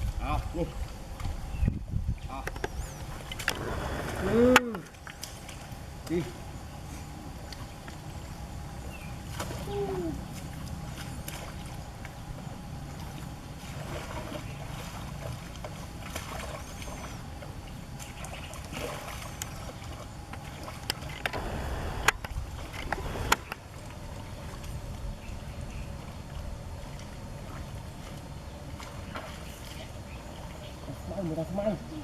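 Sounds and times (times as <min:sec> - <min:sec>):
muddy water sloshing and splashing: 0:00.0 - 0:32.0.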